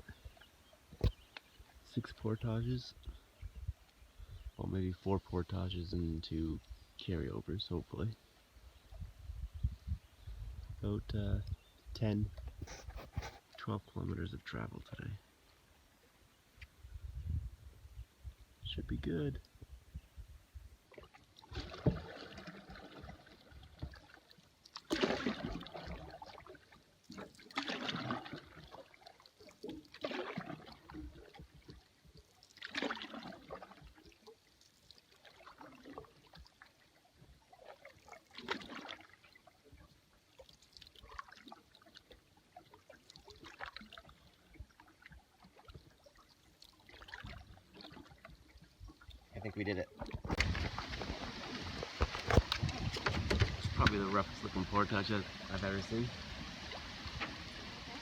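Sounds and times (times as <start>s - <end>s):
canoe paddle strokes in water: 12.3s - 13.6s, 20.9s - 58.0s.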